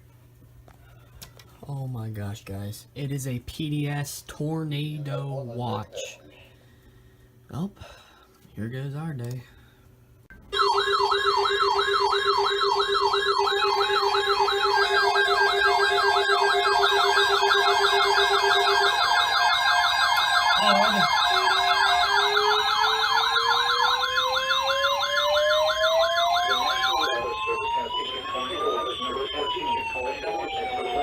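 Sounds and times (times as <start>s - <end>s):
siren yelp: 10.5s - 31.0s
siren wail rising in pitch: 10.6s - 31.0s
pulsing low siren tone: 11.0s - 31.0s.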